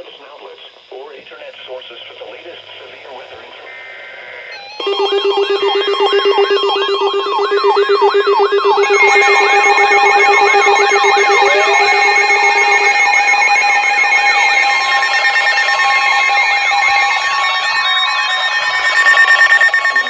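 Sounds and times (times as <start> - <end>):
steady alarm tones: 1.8 - 20.0
electronic alert alarms: 4.5 - 20.0
rapid sweeping alarm tone: 4.5 - 20.0
low pulsing tone: 4.6 - 17.2
upward gliding tone: 4.6 - 20.0.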